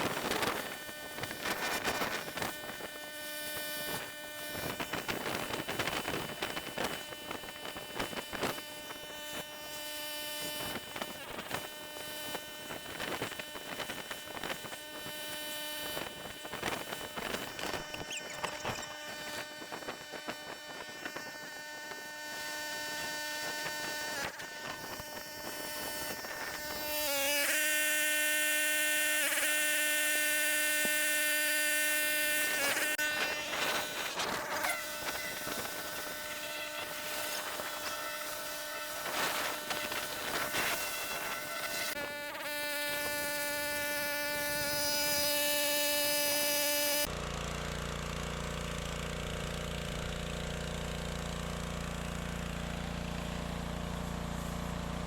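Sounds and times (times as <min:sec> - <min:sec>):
small engine droning: 0:00.0 - 0:55.0.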